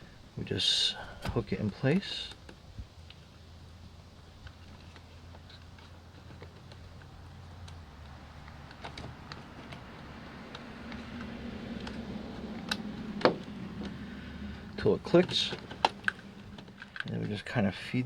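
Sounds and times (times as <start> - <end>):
low steady hum: 0.0 - 18.0
plastic parts clicking and tapping: 4.4 - 17.4.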